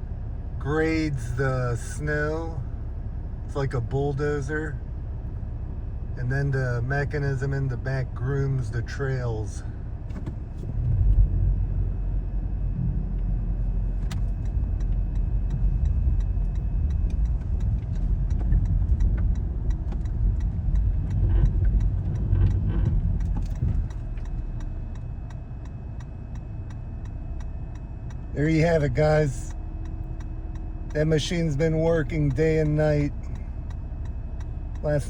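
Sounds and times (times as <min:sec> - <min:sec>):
snow groomer engine rumble: 0:00.0 - 0:04.8, 0:06.1 - 0:25.9, 0:28.2 - 0:35.0
faint regular ticking: 0:10.2 - 0:35.0.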